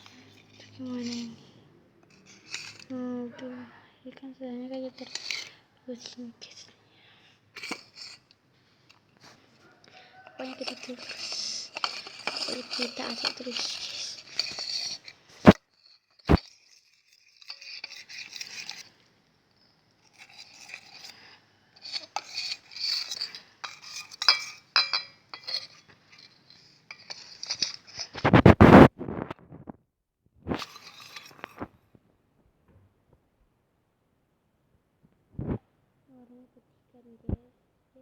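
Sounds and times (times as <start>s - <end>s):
spoon stirring slime: 0.0s - 3.5s, 4.6s - 6.7s, 7.6s - 8.4s, 9.2s - 19.1s, 19.8s - 28.2s
spoon clinking on container: 21.8s - 27.8s.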